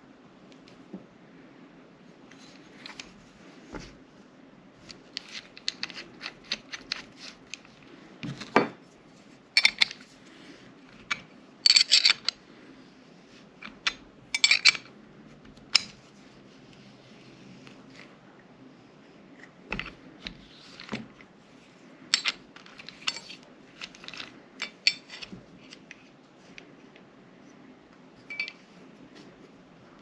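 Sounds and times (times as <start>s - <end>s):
metal tools clinking: 4.8s - 7.7s, 9.6s - 10.0s, 11.1s - 12.4s, 13.6s - 14.9s, 22.1s - 25.4s, 28.3s - 28.6s.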